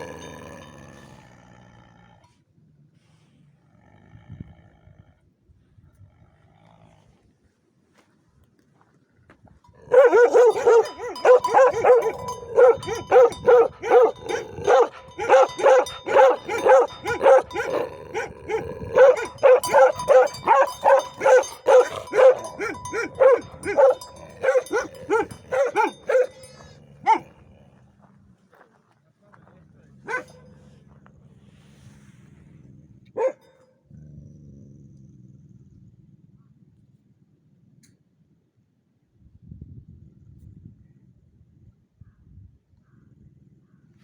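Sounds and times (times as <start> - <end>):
dog barking rapidly: 9.8 - 27.3, 30.1 - 30.4.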